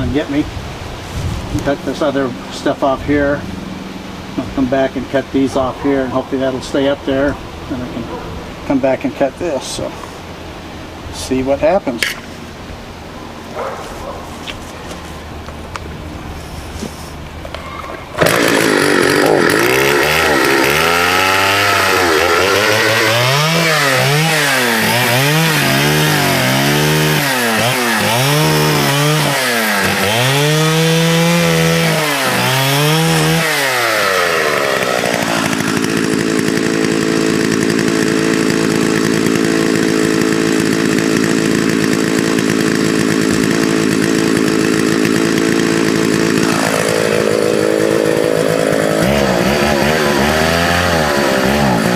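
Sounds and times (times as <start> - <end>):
chainsaw revving: 15.0 - 51.9.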